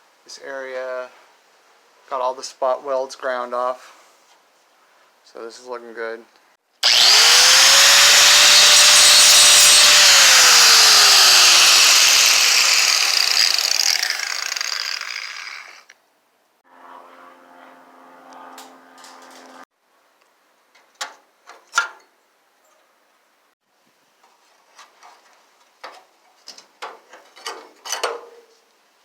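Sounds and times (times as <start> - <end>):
wire wheel grinder scraping metal: 6.8 - 15.9.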